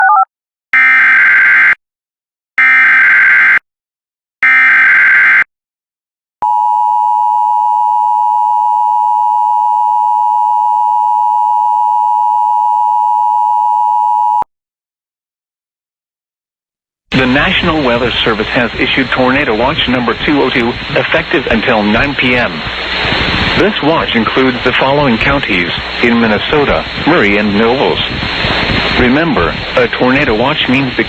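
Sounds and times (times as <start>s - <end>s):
steady attention-signal tone: 6.4s - 14.4s.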